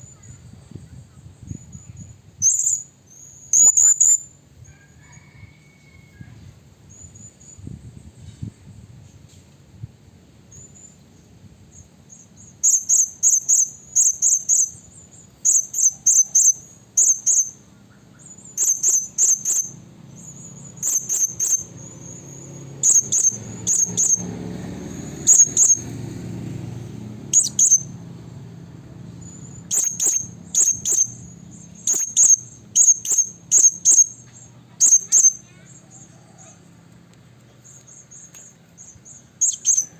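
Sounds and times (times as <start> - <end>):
parrot high squeaky calls: 2.4 - 4.2, 15.5 - 24.2, 25.2 - 25.8, 27.3 - 27.9, 29.2 - 36.6, 39.0 - 39.9.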